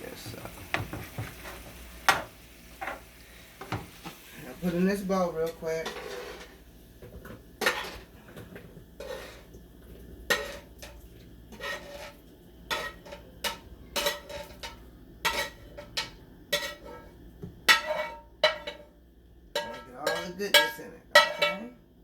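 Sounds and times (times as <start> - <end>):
metal utensil scraping a pan: 5.4 - 6.6, 7.6 - 8.2, 9.0 - 9.5, 10.3 - 19.0, 19.6 - 21.7.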